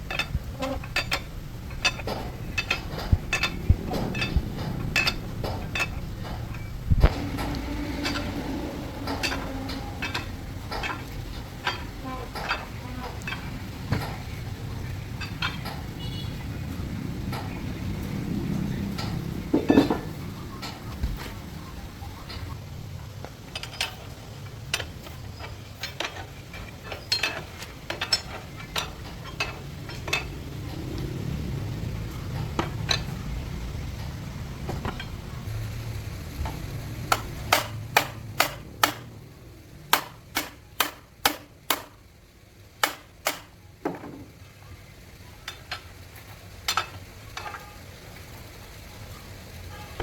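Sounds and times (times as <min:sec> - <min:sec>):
low rumble: 0:00.0 - 0:15.7
hand tools tapping metal: 0:00.0 - 0:18.2, 0:18.8 - 0:21.6, 0:22.2 - 0:31.2, 0:32.0 - 0:42.1, 0:42.8 - 0:44.4, 0:45.2 - 0:48.4.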